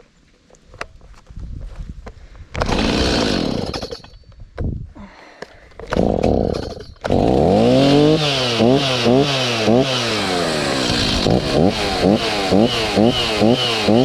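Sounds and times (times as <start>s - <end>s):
chainsaw engine revving: 2.6s - 4.1s, 5.9s - 14.0s.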